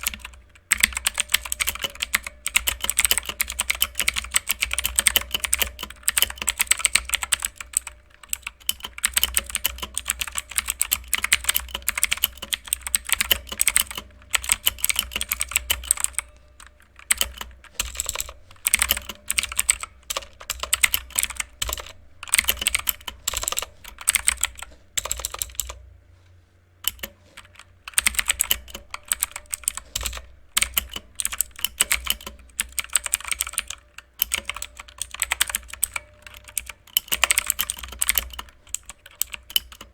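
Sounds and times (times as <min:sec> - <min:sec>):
mechanical keyboard typing: 0:00.0 - 0:25.8, 0:26.8 - 0:39.9.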